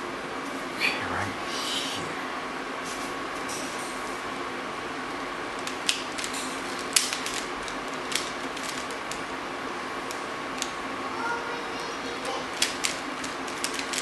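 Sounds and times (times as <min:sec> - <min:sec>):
faint hum: 0:00.0 - 0:14.0
background hiss: 0:00.8 - 0:02.3.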